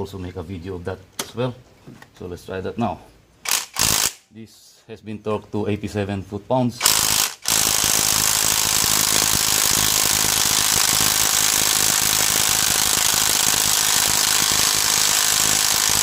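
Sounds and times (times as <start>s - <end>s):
impact wrench hammering: 3.5s - 4.2s, 6.8s - 16.0s.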